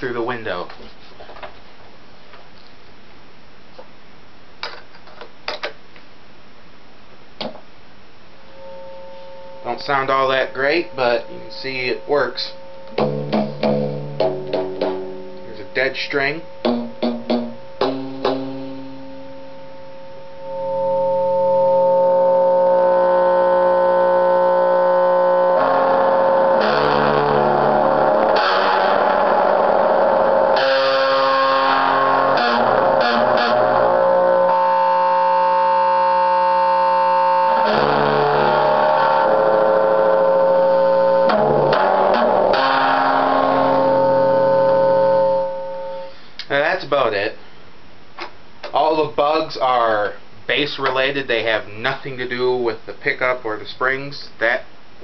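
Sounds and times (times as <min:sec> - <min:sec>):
person talking: 0:00.0 - 0:00.8, 0:09.6 - 0:12.6, 0:15.4 - 0:16.5, 0:46.4 - 0:47.4, 0:48.7 - 0:54.7
sustained bass tone: 0:08.4 - 0:46.1
plucked bass notes: 0:09.8 - 0:46.1.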